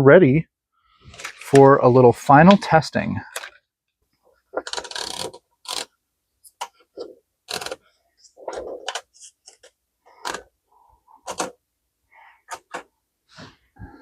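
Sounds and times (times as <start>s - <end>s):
typewriter rattling and scraping: 4.5s - 5.9s, 7.0s - 10.5s.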